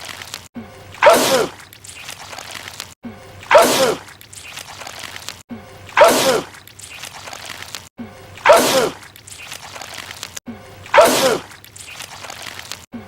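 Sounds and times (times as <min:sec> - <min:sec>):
man sneezing: 0:03.5 - 0:04.0, 0:06.0 - 0:06.5, 0:08.4 - 0:09.0, 0:10.9 - 0:11.5.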